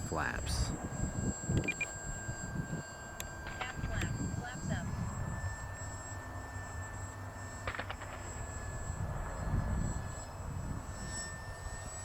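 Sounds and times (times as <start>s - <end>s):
wind rumble on microphone: 0.0s - 5.8s, 7.6s - 12.0s
electric motor whining: 0.4s - 12.0s.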